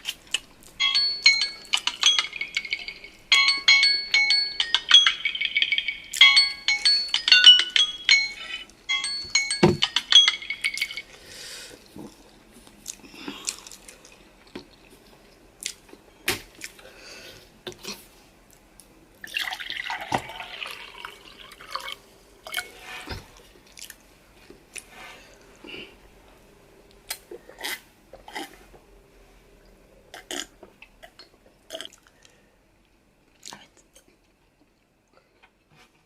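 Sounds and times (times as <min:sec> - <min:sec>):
short plinking music: 0:00.8 - 0:11.1.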